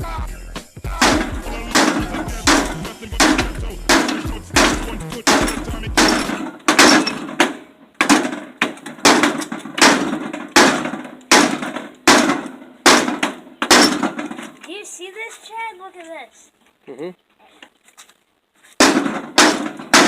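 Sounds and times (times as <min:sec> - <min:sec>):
microwave oven being smashed: 0:01.0 - 0:14.5, 0:18.8 - 0:20.0.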